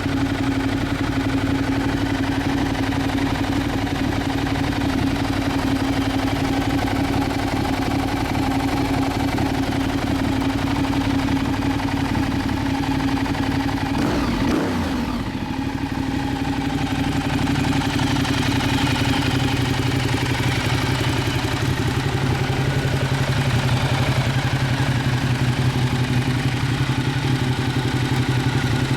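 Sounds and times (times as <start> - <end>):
motorcycle engine running: 0.0 - 28.9.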